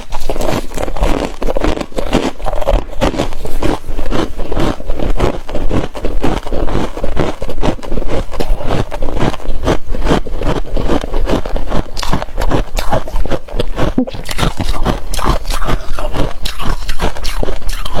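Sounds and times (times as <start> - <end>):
frost being crunched and scraped: 0.0 - 18.0.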